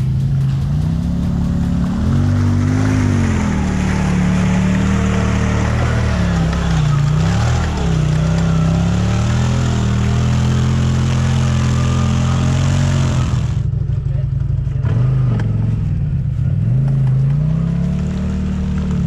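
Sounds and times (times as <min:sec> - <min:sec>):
atv engine revving: 0:00.0 - 0:19.0.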